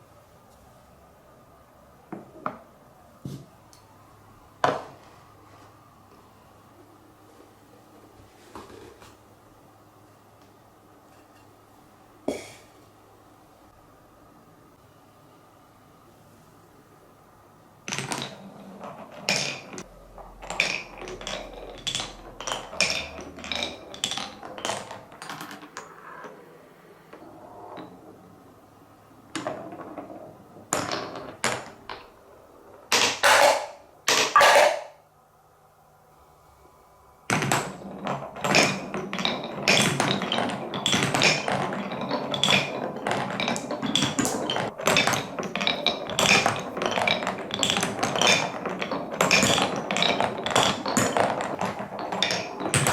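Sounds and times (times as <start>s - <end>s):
marbles clattering on wooden blocks: 17.9s - 26.4s, 29.3s - 35.0s, 37.3s - 52.9s.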